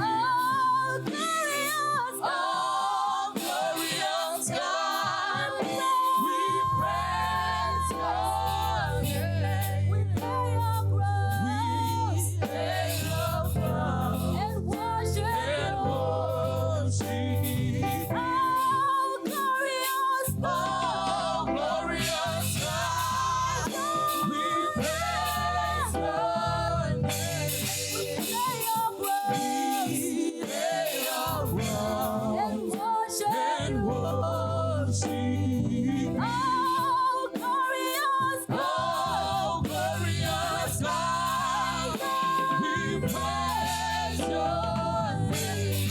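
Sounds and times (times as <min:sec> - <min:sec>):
church choir singing gospel: 0:00.0 - 0:45.9
low bass accompaniment: 0:06.7 - 0:18.4, 0:20.3 - 0:23.7, 0:24.8 - 0:27.8, 0:31.4 - 0:32.4, 0:33.6 - 0:36.5, 0:38.9 - 0:42.0, 0:42.7 - 0:45.9.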